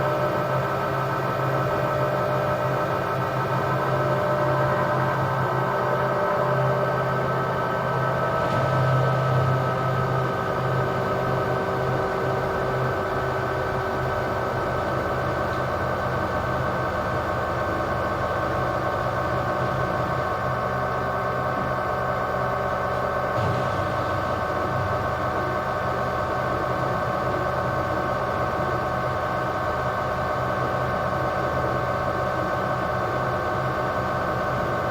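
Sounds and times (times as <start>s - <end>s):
washing machine spinning: 7.9s - 34.9s.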